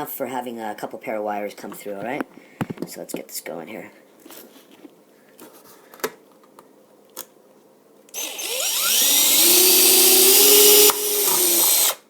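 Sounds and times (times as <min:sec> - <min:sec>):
electric drill boring plastic: 0:08.2 - 0:12.0.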